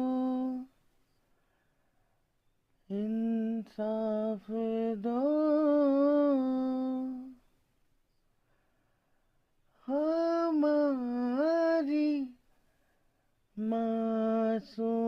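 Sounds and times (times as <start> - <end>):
person singing unaccompanied: 0.0 - 0.8, 2.9 - 7.4, 9.7 - 12.4, 13.6 - 15.0.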